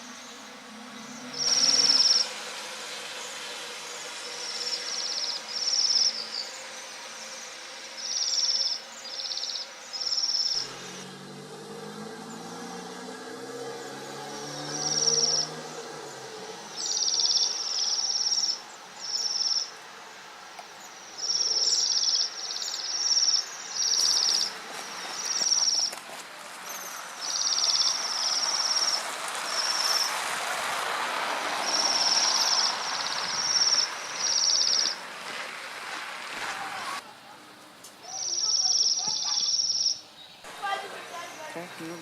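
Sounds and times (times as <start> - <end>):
songbird trilling: 8.0 - 10.6, 14.7 - 15.5, 16.7 - 19.8, 20.8 - 26.0, 27.2 - 30.1, 31.7 - 35.0, 38.0 - 40.4.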